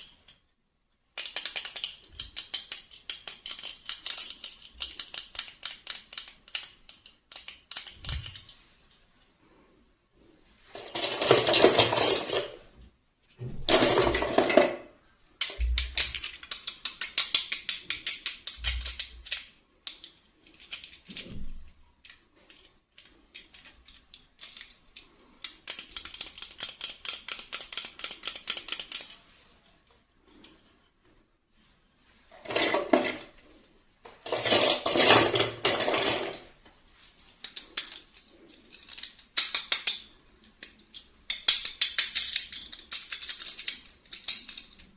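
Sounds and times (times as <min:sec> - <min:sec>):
plastic dolls clicking and tapping: 0:00.0 - 0:00.4, 0:01.0 - 0:08.6, 0:15.4 - 0:21.3, 0:22.0 - 0:29.3, 0:37.4 - 0:44.9.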